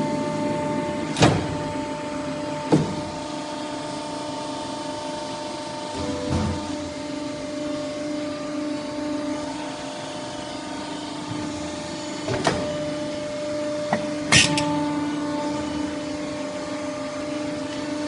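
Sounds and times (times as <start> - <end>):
pipe bending machine humming: 0.0 - 18.0.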